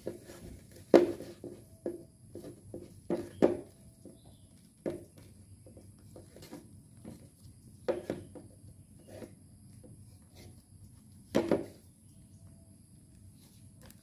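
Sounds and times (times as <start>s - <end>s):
knocks and taps on a sandal: 0.0s - 8.6s.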